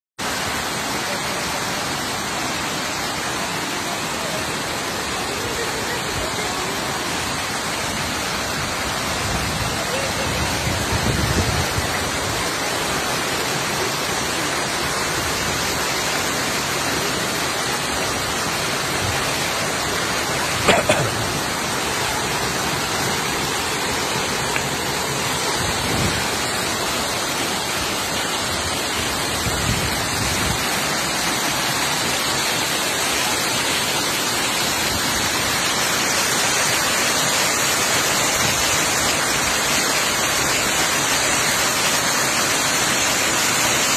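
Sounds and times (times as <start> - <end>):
waterfall roaring: 0.2 - 43.9.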